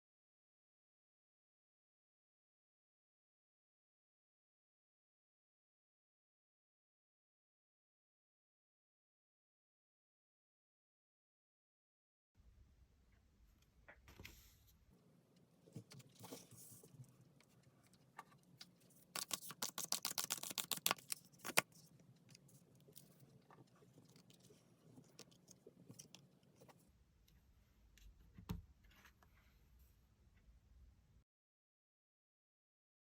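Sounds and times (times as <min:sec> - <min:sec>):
cards shuffling and clicking: 0:18.6 - 0:23.2
card snap: 0:19.2 - 0:21.7.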